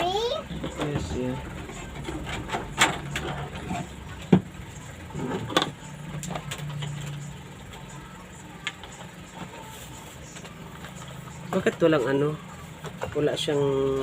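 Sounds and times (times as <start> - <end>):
parts clicking and knocking: 0.5 - 9.6.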